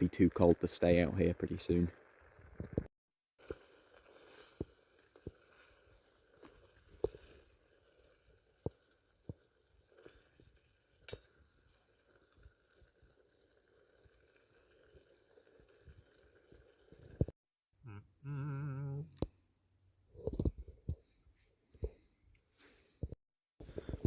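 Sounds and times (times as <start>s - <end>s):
person humming: 17.8s - 19.2s.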